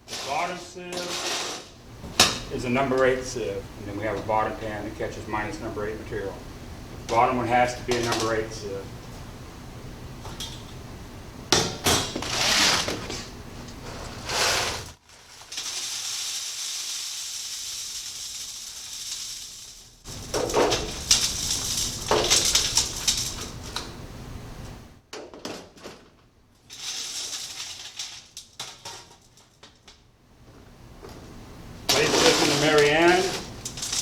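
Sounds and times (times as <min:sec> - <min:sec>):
grains hissing down: 0:00.0 - 0:09.0, 0:13.8 - 0:25.0, 0:26.7 - 0:28.3, 0:31.3 - 0:34.0
stones rattling against metal sieves: 0:00.1 - 0:04.8, 0:14.1 - 0:24.1, 0:26.6 - 0:29.6, 0:31.8 - 0:34.0.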